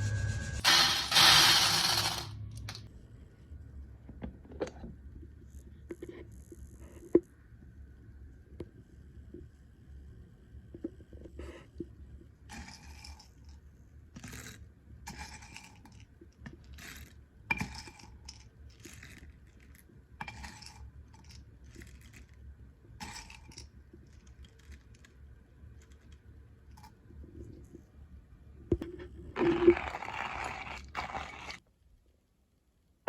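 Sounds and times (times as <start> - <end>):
coffee beans rattling in roaster: 0.6 - 2.8.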